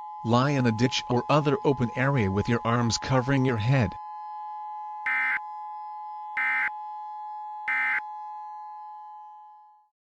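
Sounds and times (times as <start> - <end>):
two-tone attention signal: 5.0 - 5.4, 6.0 - 7.0, 7.6 - 8.2.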